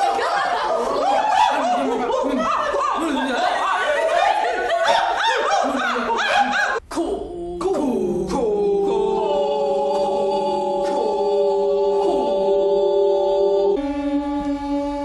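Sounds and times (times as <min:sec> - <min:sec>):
voices singing in harmony: 0:00.0 - 0:15.0.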